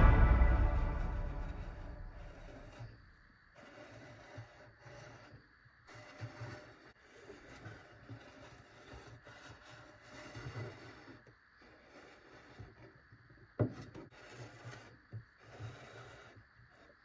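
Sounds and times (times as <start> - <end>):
sharp knock: 0.0 - 2.5
rubbing and scraping in kitchen: 3.6 - 17.0.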